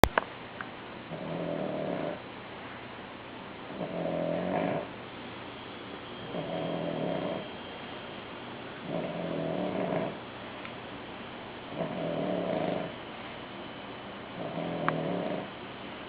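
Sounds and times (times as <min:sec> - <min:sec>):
pet snoring: 0:01.1 - 0:02.2, 0:03.7 - 0:04.9, 0:06.3 - 0:07.6, 0:08.8 - 0:10.2, 0:11.7 - 0:13.0, 0:14.3 - 0:15.6.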